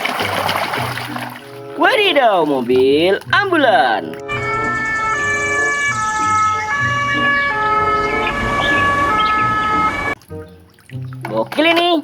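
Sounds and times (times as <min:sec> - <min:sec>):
two-tone ambulance siren: 0:04.2 - 0:10.2.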